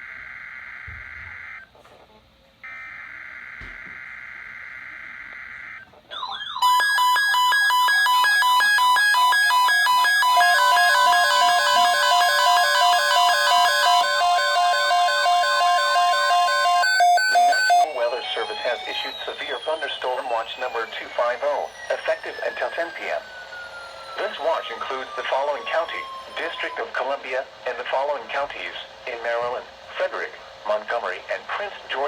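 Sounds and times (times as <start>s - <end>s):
steady warning alarm tone: 2.6s - 29.5s
radio alarms warbling and beeping: 2.6s - 30.2s
buzzing data tone bursts: 6.6s - 17.9s.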